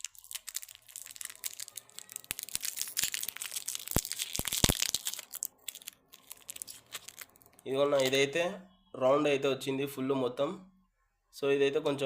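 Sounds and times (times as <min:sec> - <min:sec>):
plastic wrapper crinkling: 0:00.0 - 0:08.2.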